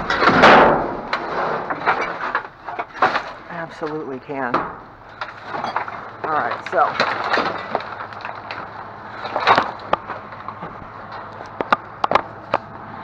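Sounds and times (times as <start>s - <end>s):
metal scrape: 0.0s - 3.6s
lamp parts clattering in a dumpster: 0.0s - 12.6s.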